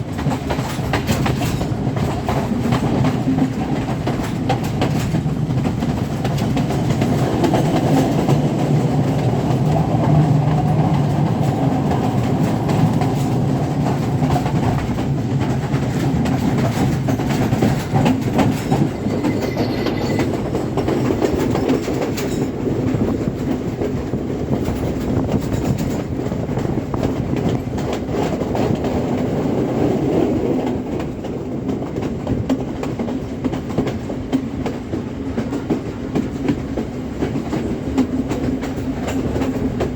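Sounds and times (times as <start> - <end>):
train wheels clattering on rails: 0.0 - 39.9
faint squeal: 18.4 - 20.6.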